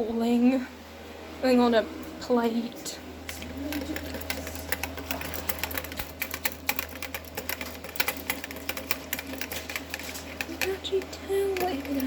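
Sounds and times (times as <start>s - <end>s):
utensils clicking against a pot: 3.3s - 12.0s.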